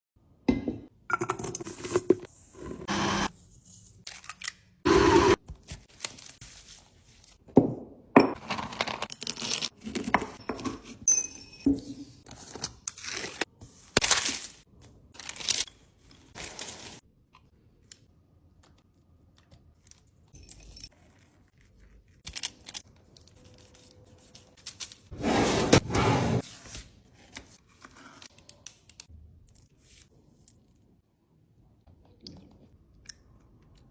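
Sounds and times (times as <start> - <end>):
packaging tearing and crinkling: 22.2 - 24.0.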